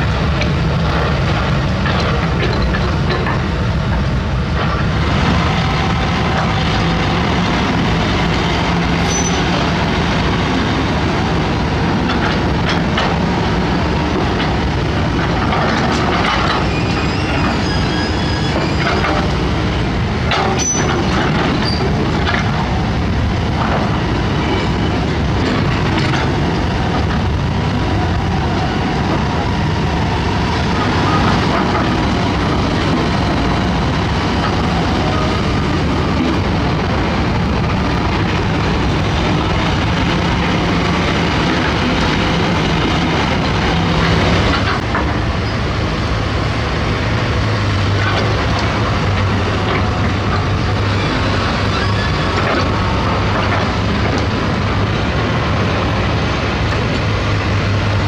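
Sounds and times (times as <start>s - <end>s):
heavy machinery engines running: 0.0s - 58.0s
high squeaks: 9.0s - 9.5s, 16.6s - 19.0s, 51.0s - 52.4s.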